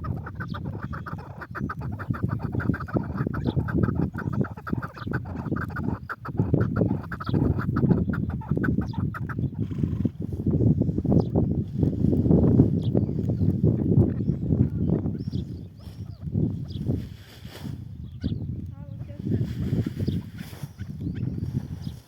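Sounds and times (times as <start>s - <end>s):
partridge clucking call: 0.0s - 9.6s, 13.6s - 15.4s.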